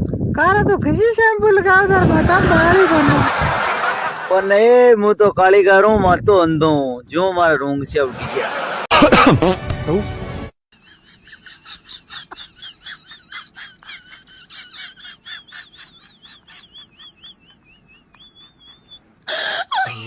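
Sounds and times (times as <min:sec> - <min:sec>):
small bird chirping: 0:15.5 - 0:19.0.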